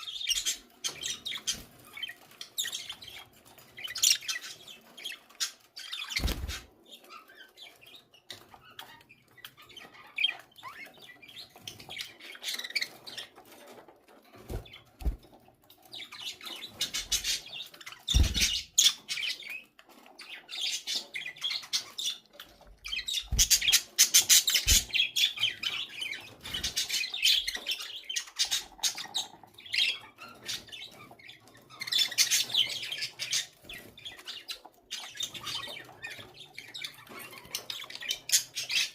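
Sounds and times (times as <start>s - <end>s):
budgerigars chirping: 0.0s - 38.9s.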